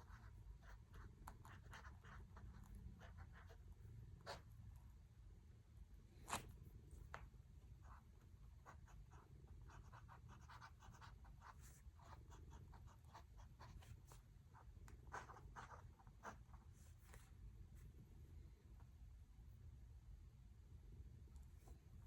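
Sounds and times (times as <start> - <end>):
pen scratching on paper: 0.0 - 4.5, 7.8 - 16.9.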